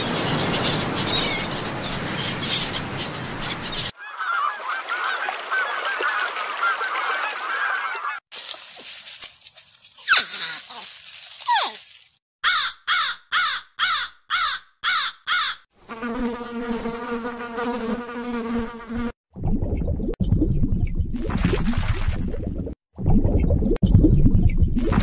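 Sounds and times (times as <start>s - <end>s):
animal hiss with falling calls: 10.0s - 12.1s.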